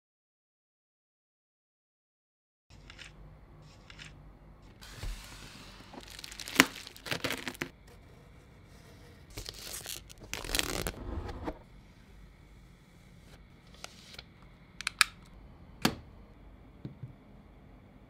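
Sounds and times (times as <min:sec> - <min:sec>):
packaging rustling and tearing: 0:04.8 - 0:07.7, 0:09.3 - 0:11.2.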